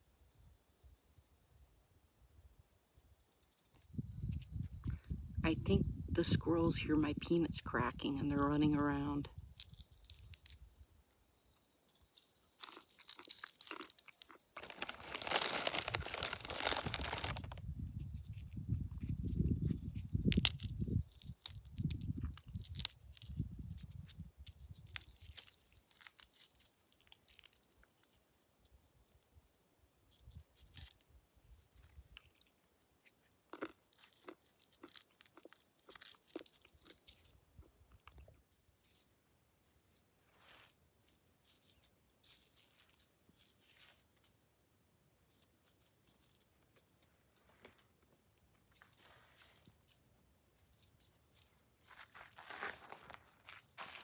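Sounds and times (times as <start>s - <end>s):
insects chirring: 0.0s - 32.6s, 33.2s - 39.0s, 50.4s - 54.0s
peanut shells cracking: 8.1s - 10.6s, 12.6s - 17.6s, 20.1s - 29.2s, 33.4s - 37.0s.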